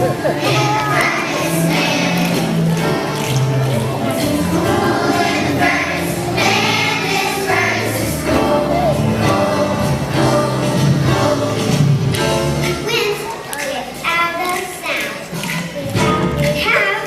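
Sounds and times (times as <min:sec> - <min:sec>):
children's choir singing: 0:00.0 - 0:13.5
musical accompaniment: 0:00.0 - 0:17.0.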